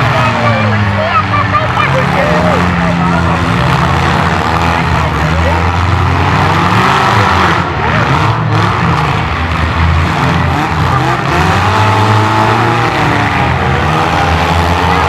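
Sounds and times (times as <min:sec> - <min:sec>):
car engines revving: 0:00.0 - 0:15.0.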